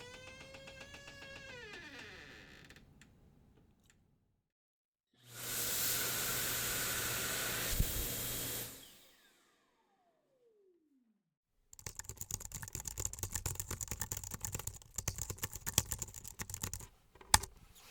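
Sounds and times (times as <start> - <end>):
computer keyboard typing: 11.8 - 17.6.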